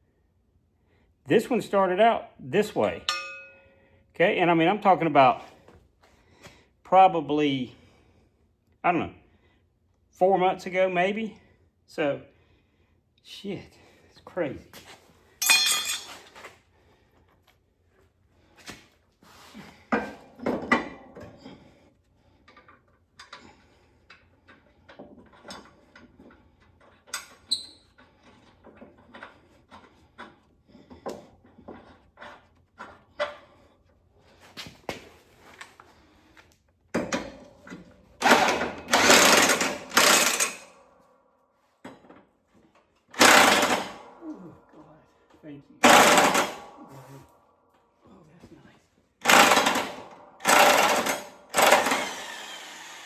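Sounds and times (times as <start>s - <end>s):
metal clinks and knocks: 3.0s - 3.8s, 15.4s - 16.5s
impact wrench running: 37.0s - 40.8s, 43.1s - 44.4s, 45.8s - 47.3s, 49.2s - 53.0s.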